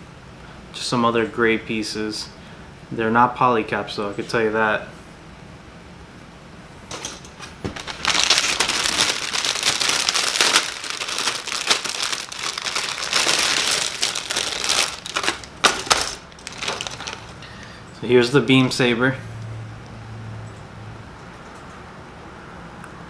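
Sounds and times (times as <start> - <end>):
plastic bag crinkling and tearing: 7.0 - 17.5.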